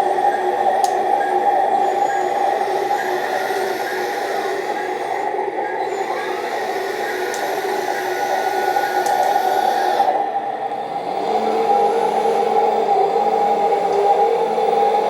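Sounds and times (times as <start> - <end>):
toy excavator motors whining: 1.8 - 10.3.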